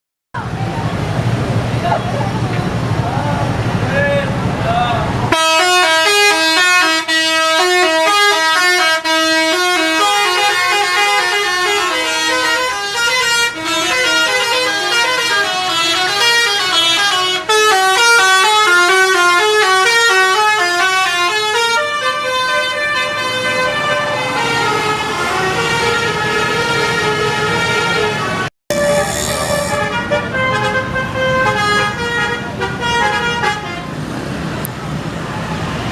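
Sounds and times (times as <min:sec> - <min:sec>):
musical bus horn playing a tune: 0:05.3 - 0:33.9.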